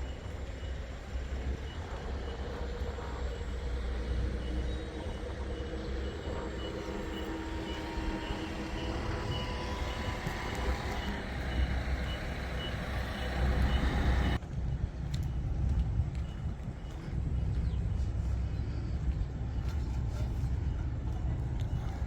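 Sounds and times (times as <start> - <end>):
short high warning beeps: 0.0 - 14.4
engine rumble: 0.0 - 22.0
harvester engine drone: 0.0 - 22.0.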